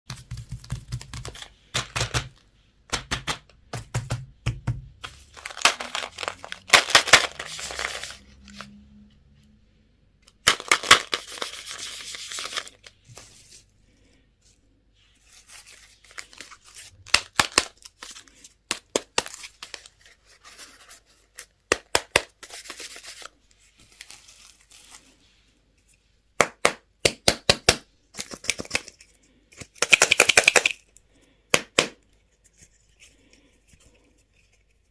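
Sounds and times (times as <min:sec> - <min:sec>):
packaging tearing and crinkling: 0:05.3 - 0:08.2.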